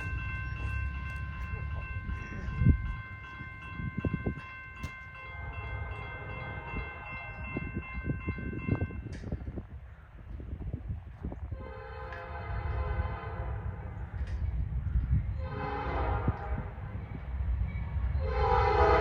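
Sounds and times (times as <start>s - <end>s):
wheels clanking on rails: 0.0s - 11.3s
train engine rumble: 0.0s - 19.0s
train horn: 5.3s - 7.4s, 11.5s - 14.1s, 15.4s - 17.0s, 18.2s - 19.0s.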